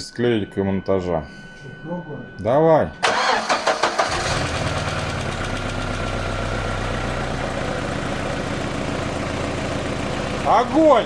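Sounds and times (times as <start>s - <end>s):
car engine starting and idling: 3.0s - 11.0s.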